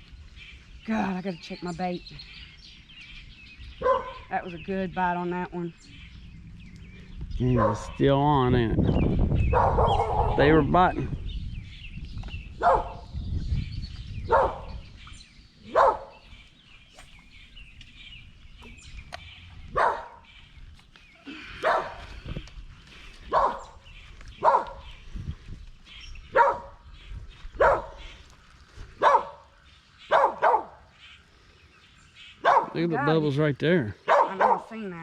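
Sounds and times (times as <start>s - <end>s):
dog barking: 3.8s - 4.3s, 7.5s - 8.0s, 9.5s - 10.5s, 12.6s - 13.1s, 14.3s - 14.8s, 15.7s - 16.2s, 19.7s - 20.3s, 21.6s - 22.1s, 23.3s - 23.8s, 24.4s - 24.9s, 26.3s - 26.8s, 27.6s - 28.0s, 29.0s - 29.4s, 30.1s - 30.8s, 32.4s - 32.8s, 34.0s - 34.8s.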